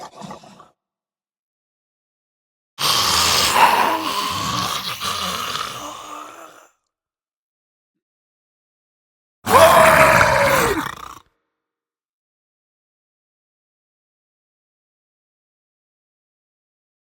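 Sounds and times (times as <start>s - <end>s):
distorted zombie creature vocal: 2.8s - 6.8s, 9.5s - 11.2s.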